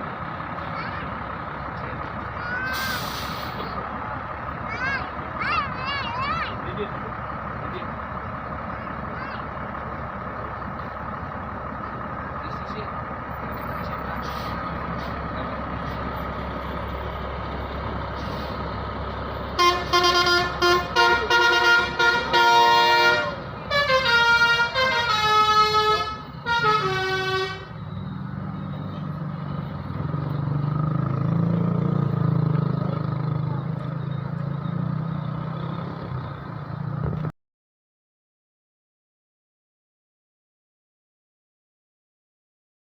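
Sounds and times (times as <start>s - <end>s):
bus engine running: 0.0s - 37.3s
musical air horn tune: 19.6s - 27.8s.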